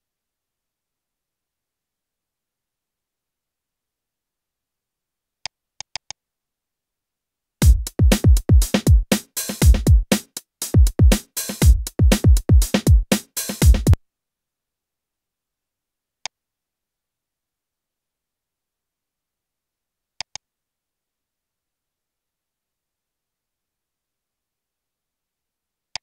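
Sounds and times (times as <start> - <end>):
drum machine loop: 7.6 - 14.0.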